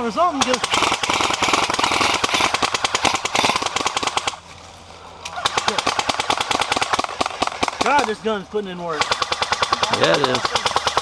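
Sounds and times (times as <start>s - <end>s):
toy gun firing rapid clicks: 0.4s - 4.4s, 5.5s - 8.2s, 9.0s - 11.0s.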